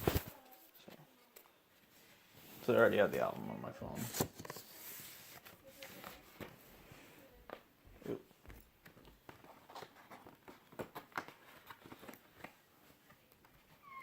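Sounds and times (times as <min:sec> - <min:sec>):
paper and cardboard rustling: 0:00.0 - 0:01.1, 0:04.0 - 0:07.6, 0:08.8 - 0:13.8.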